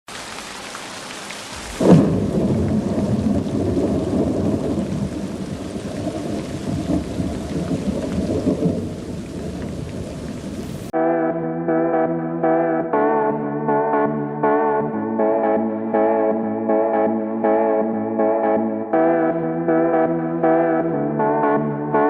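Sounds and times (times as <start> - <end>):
heavy rain: 0.1 - 10.9
thunder clap: 1.6 - 10.9
rolling thunder rumble: 1.7 - 10.9.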